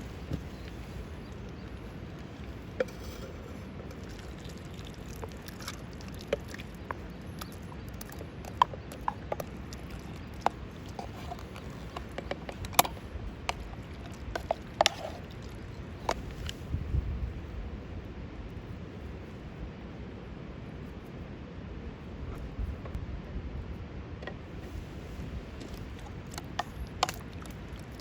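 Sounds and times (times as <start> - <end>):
campfire crackling and popping: 0.0 - 16.4.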